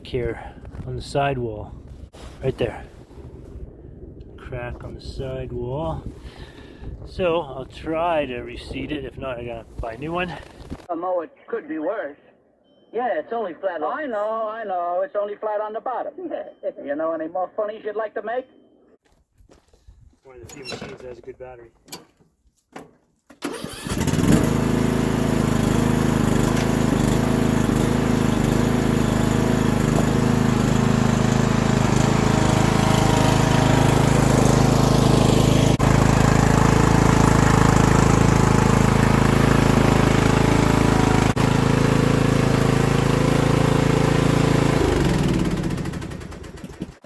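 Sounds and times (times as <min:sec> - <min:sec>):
electric starter cranking: 0:23.3 - 0:47.0
lawn mower engine running: 0:23.4 - 0:47.0.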